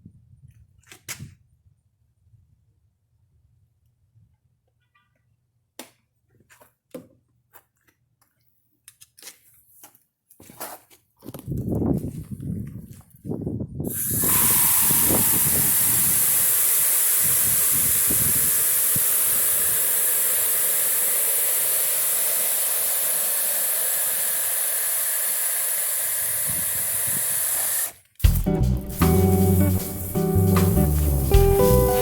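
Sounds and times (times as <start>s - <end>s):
water spraying from hose: 13.9s - 32.0s
music with a beat: 28.2s - 32.0s.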